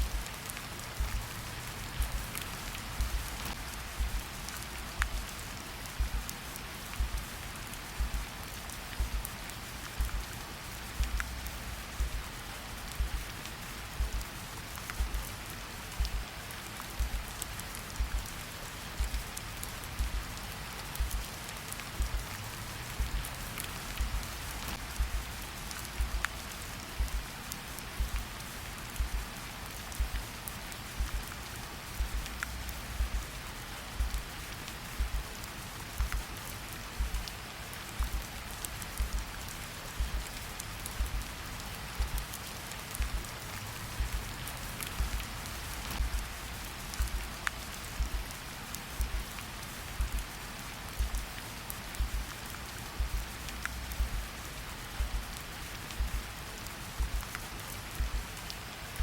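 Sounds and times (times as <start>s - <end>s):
deep heartbeat thumping: 0.0s - 0.2s, 1.0s - 1.3s, 2.0s - 2.2s, 3.0s - 3.3s, 3.9s - 4.3s, 5.0s - 5.3s, 6.0s - 6.3s, 7.0s - 7.3s, 8.0s - 8.2s, 9.0s - 9.3s, 10.0s - 10.3s, 11.0s - 11.3s, 12.0s - 12.3s, 13.0s - 13.3s, 14.0s - 14.3s, 15.0s - 15.2s, 16.0s - 16.2s, 17.0s - 17.3s, 18.0s - 18.2s, 19.0s - 19.3s, 20.0s - 20.3s, 21.0s - 21.2s, 22.0s - 22.3s, 23.0s - 23.3s, 24.0s - 24.3s, 25.0s - 25.4s, 26.0s - 26.2s, 27.0s - 27.2s, 28.0s - 28.3s, 29.0s - 29.3s, 30.0s - 30.3s, 31.0s - 31.3s, 32.0s - 33.3s, 34.0s - 34.3s, 35.0s - 35.3s, 36.0s - 36.3s, 37.0s - 37.3s, 38.0s - 38.3s, 39.0s - 39.3s, 40.0s - 40.3s, 41.0s - 41.3s, 42.0s - 42.3s, 43.0s - 43.2s, 44.0s - 44.3s, 45.0s - 45.2s, 46.0s - 46.4s, 47.0s - 47.3s, 48.0s - 48.2s, 49.0s - 49.3s, 50.0s - 50.3s, 51.0s - 51.3s, 52.0s - 52.3s, 53.0s - 53.4s, 54.0s - 54.3s, 55.0s - 55.3s, 56.0s - 56.3s, 57.0s - 57.3s, 58.0s - 58.3s
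steady rain falling: 0.0s - 59.0s.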